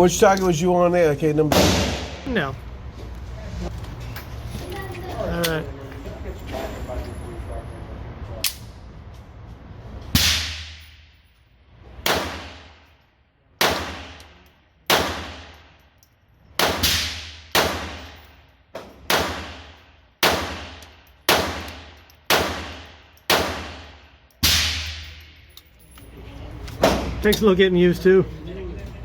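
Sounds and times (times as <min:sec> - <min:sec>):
echoing pistol shots: 0:01.5 - 0:02.3, 0:12.0 - 0:12.8, 0:13.6 - 0:14.3, 0:14.9 - 0:15.6, 0:16.6 - 0:18.2, 0:19.1 - 0:25.2.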